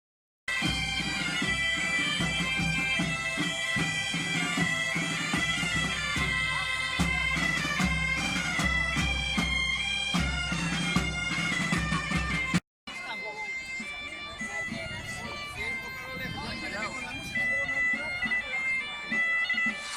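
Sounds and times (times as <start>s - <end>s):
drum beating: 0.5s - 12.6s
bagpipe playing a tune: 0.5s - 19.9s.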